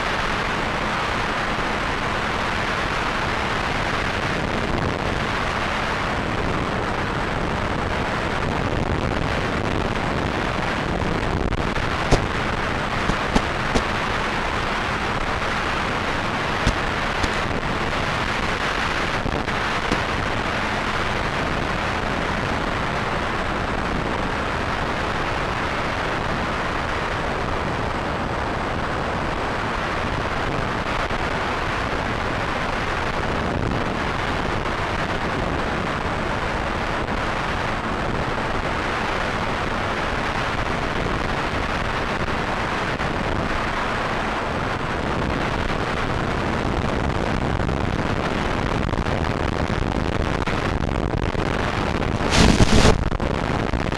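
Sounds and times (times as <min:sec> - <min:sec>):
wind noise on microphone: 0:00.0 - 0:53.9.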